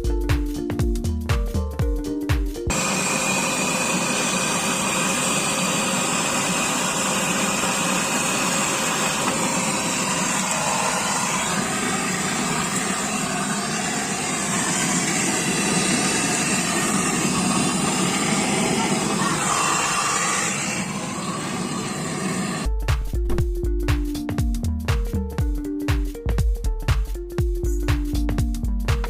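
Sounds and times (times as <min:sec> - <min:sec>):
brazing torch flame roaring: 0:02.7 - 0:22.7.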